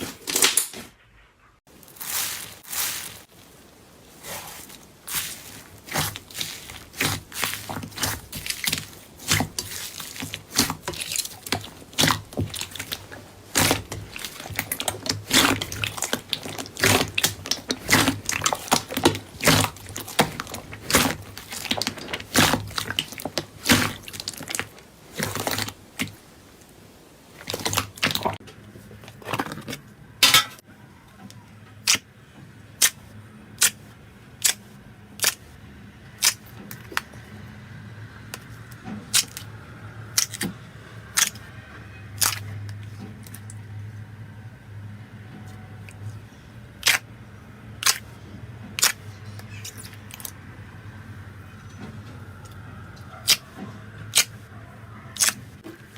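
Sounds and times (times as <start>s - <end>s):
slime toy clicking and crackling: 34.4s - 34.6s, 35.2s - 35.4s, 36.2s - 37.0s, 46.8s - 47.0s, 47.8s - 48.0s, 55.2s - 55.4s.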